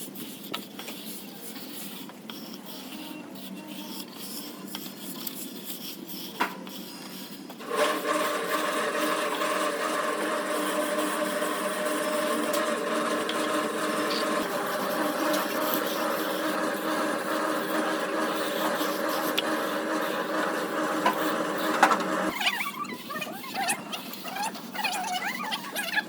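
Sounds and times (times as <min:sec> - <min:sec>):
machine motor running: 0:07.6 - 0:22.4.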